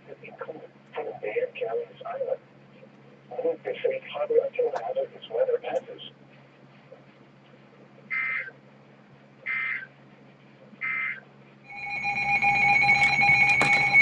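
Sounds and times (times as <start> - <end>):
steady electronic alert tone: 11.7 - 14.0.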